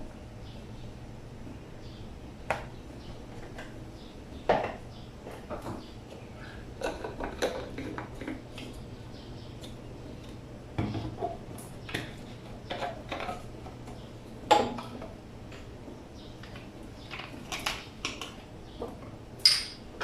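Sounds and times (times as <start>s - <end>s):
hard objects knocking and clattering: 4.5s - 5.9s, 6.8s - 8.7s, 10.8s - 13.8s.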